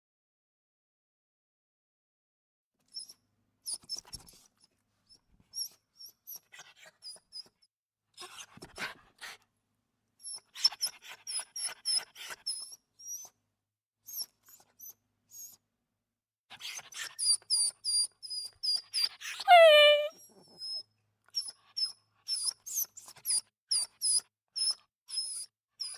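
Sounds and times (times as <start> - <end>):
dog whimpering: 19.5 - 20.1.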